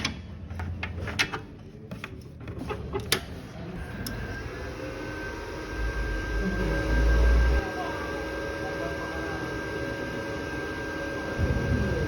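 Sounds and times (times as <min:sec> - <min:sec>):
welding machine whine: 0:03.8 - 0:12.0.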